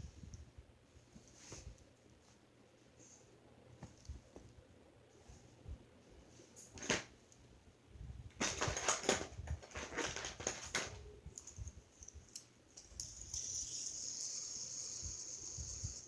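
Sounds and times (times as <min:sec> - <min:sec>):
plastic toys clicking and rattling: 0:08.4 - 0:11.6
high hiss: 0:13.0 - 0:16.0.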